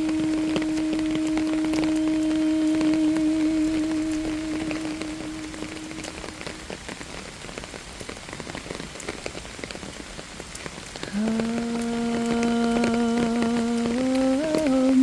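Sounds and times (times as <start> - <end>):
held low sung note: 0.0 - 6.8, 11.1 - 15.0
rain drops ticking on surface: 0.0 - 15.0.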